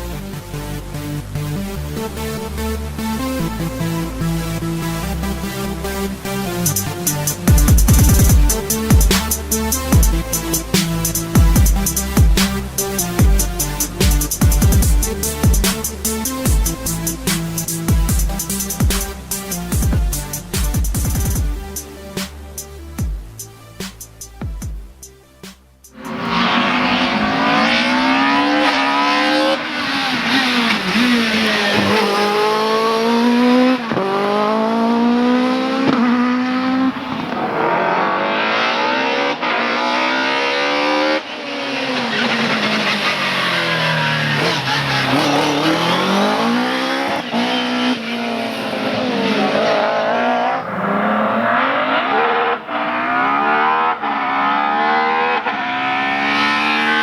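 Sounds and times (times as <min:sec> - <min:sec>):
race car engine accelerating: 0:26.0 - 0:57.0.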